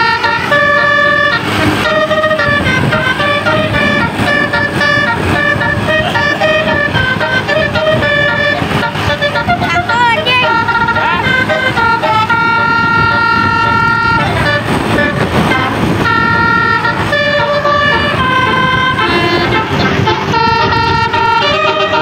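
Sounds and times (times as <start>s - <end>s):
bus horn playing a tune: 0.0s - 22.0s.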